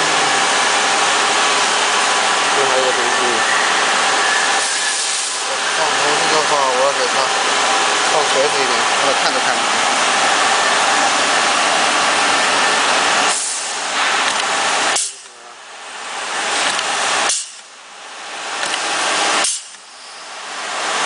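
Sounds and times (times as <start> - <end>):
compressed air hissing: 2.9 - 8.2, 13.2 - 15.4, 16.5 - 17.7
pneumatic tool click: 14.2 - 15.3, 16.6 - 17.7, 18.6 - 19.9.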